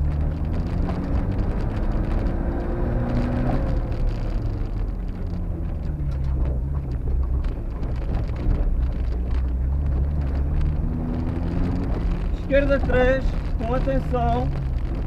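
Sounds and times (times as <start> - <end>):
car engine revving in cabin: 0.0 - 15.0.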